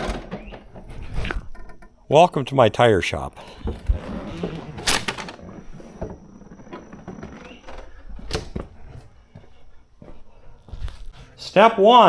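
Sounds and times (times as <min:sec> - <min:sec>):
clatter of things handled: 0:03.4 - 0:11.4.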